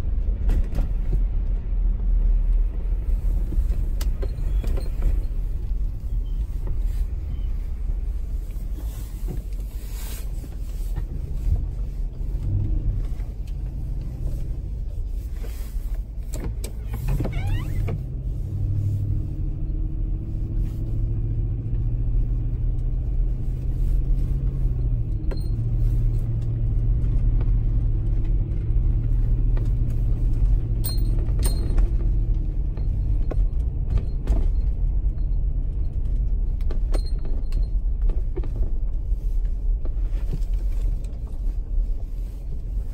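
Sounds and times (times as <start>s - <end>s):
vehicle engine running: 0.0s - 42.9s.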